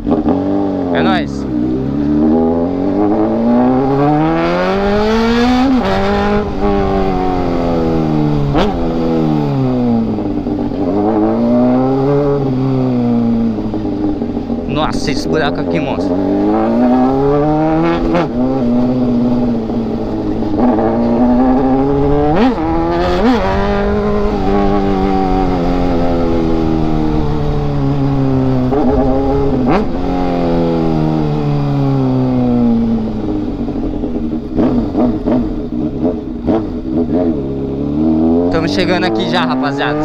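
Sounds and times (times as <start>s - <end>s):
motorcycle engine accelerating: 0.0s - 40.0s.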